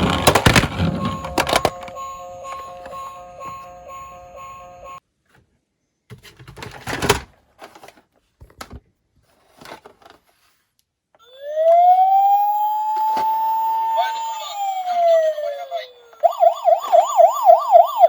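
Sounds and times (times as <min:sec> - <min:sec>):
toy car electronic siren wail: 0:00.0 - 0:05.0, 0:11.2 - 0:18.0.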